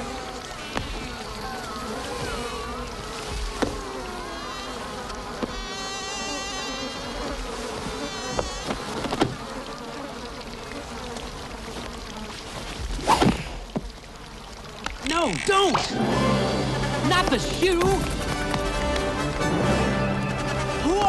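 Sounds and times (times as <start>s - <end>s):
cartoon fly buzzing: 0.0s - 12.3s.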